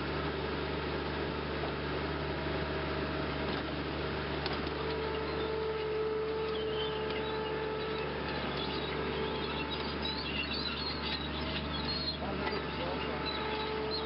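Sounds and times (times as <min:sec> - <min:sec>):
small birds chirping: 0:04.8 - 0:14.0.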